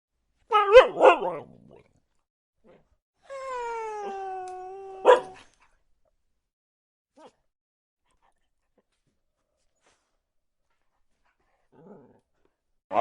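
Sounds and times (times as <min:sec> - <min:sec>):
dog barking: 0:00.5 - 0:01.5, 0:05.0 - 0:05.4.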